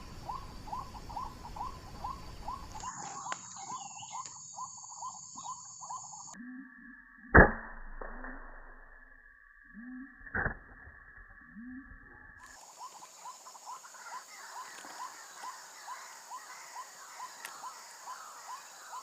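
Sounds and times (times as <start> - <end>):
bird croaking notes: 0.0 - 7.4.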